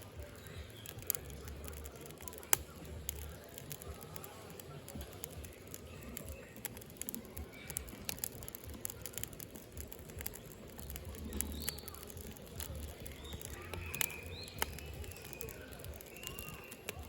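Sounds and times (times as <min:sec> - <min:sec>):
firewood crackling and popping: 0:00.0 - 0:17.0
low fire rumble: 0:00.0 - 0:17.0
birds chirping: 0:10.2 - 0:17.0.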